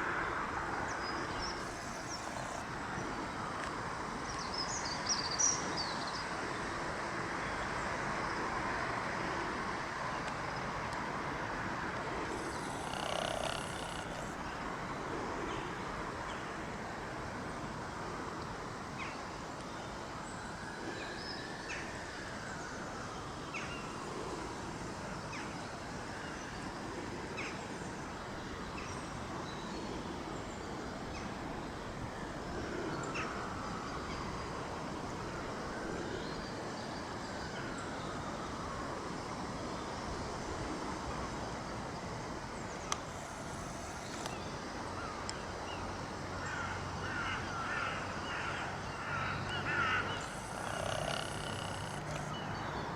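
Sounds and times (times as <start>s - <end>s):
short bird calls: 1.3s - 2.6s, 12.3s - 14.4s.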